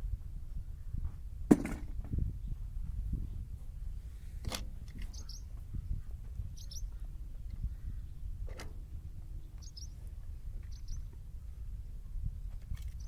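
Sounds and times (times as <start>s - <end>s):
small bird chirping: 5.0s - 7.0s, 9.4s - 11.6s.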